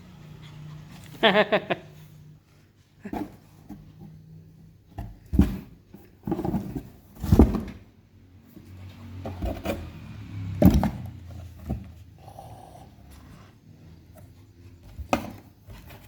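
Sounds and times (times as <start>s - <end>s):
kittens scuffling in cardboard box: 4.9s - 16.0s.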